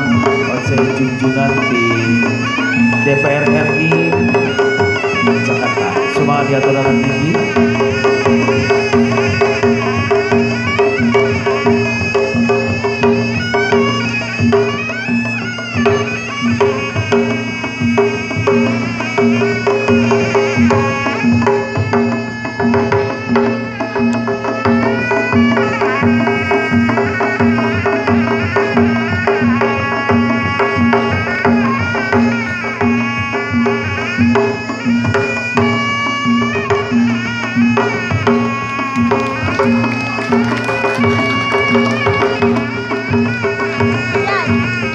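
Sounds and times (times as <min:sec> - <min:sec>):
reed-pipe melody: 0:00.0 - 0:19.7, 0:37.8 - 0:44.9
hand drums beaten: 0:38.6 - 0:44.5.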